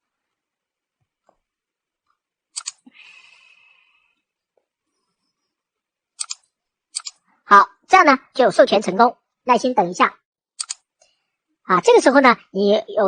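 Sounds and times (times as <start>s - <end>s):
computer mouse double clicks: 10.6s - 10.9s.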